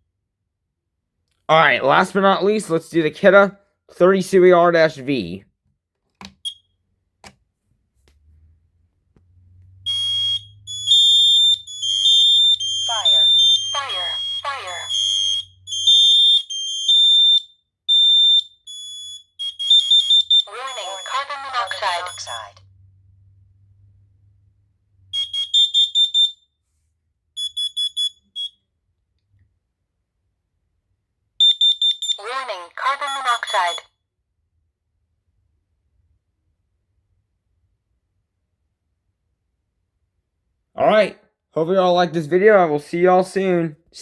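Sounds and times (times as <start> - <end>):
voice alarm speaking: 1.5 - 5.4, 11.8 - 15.4, 20.0 - 22.6, 32.0 - 33.9, 40.8 - 44.0
alarm beeping: 9.8 - 22.6, 25.1 - 26.4, 31.4 - 33.9.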